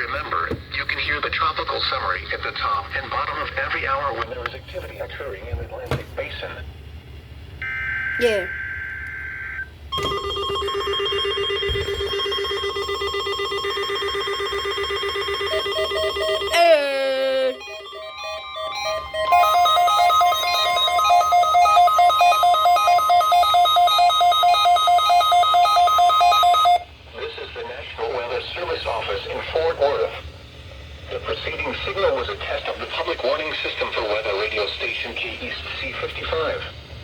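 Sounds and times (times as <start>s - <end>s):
steady high alarm tone: 7.6s - 26.9s
rapid two-note beeping: 10.0s - 16.8s, 17.4s - 26.8s
buzzy pulsing alert tone: 14.9s - 26.8s.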